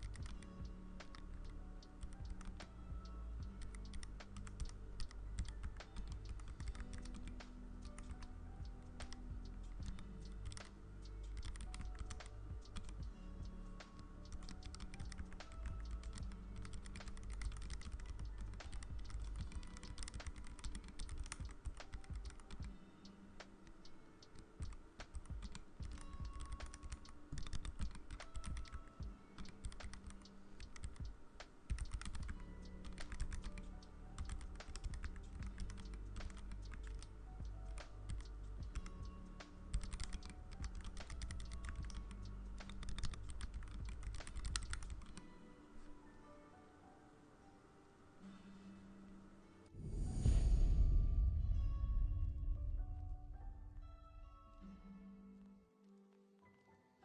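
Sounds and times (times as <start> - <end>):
rapid keyboard typing: 0.0 - 13.1, 13.8 - 22.8, 23.6 - 45.3
background music: 0.0 - 57.0.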